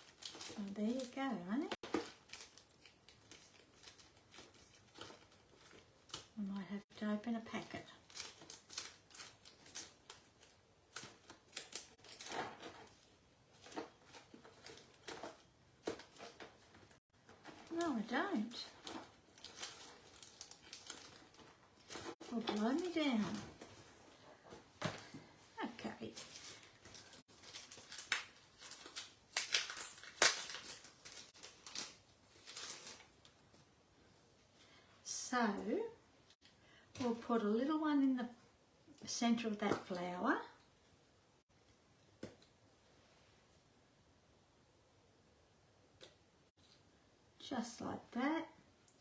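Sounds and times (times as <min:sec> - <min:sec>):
packets clicking and rustling: 0:00.0 - 0:06.4, 0:08.0 - 0:25.4, 0:26.1 - 0:33.4.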